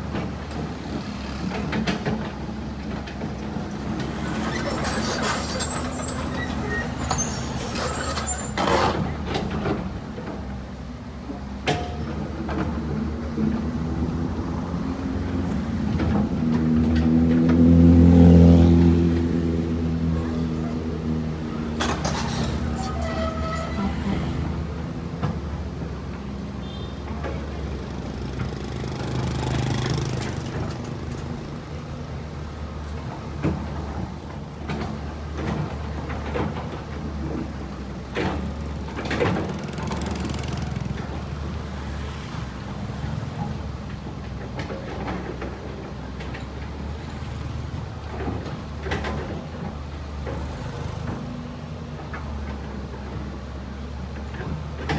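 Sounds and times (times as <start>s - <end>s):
excavator diesel engine: 0.0s - 54.9s
sharp knocks and clanks: 11.6s - 13.8s, 21.3s - 26.5s.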